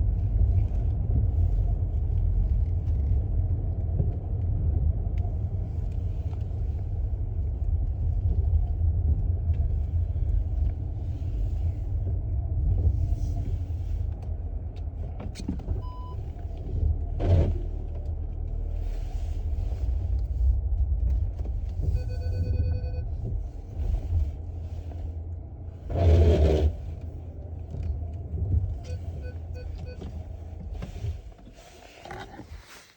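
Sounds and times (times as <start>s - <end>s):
car engine and road rumble: 0.0s - 32.9s
short electronic beep: 21.9s - 23.1s.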